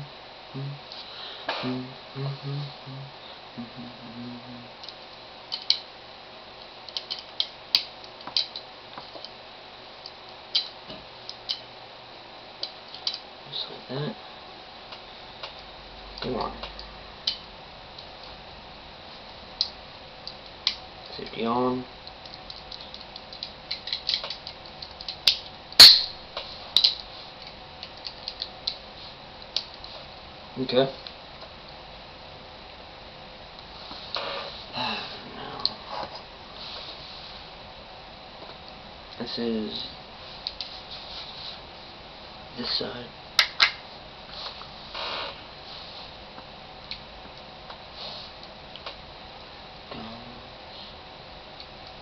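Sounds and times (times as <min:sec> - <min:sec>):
small metal parts clicking: 0:22.2 - 0:26.0.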